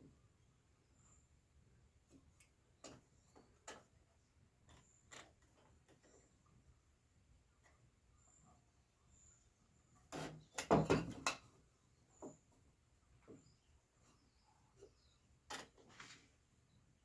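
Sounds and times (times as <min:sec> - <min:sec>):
knocks and clatter on workbench: 0:10.1 - 0:11.5.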